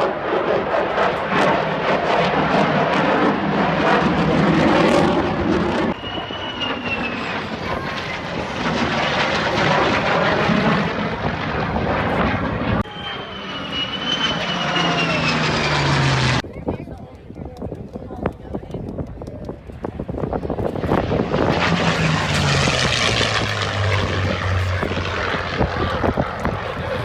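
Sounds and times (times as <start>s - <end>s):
airplane engine rumble: 0.0s - 16.6s, 19.0s - 27.0s
thin wavering whistle: 5.9s - 7.9s, 12.8s - 15.4s.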